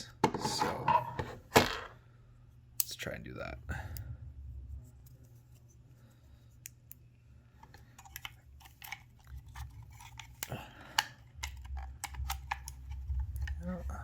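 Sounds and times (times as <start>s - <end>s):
plastic clicks and scrapes: 7.6s - 13.7s.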